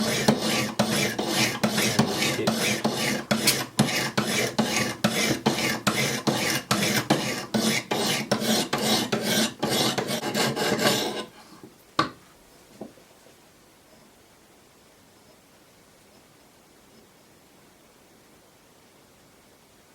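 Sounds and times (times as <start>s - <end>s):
sharpening stones rasping on blade: 0.0s - 11.3s.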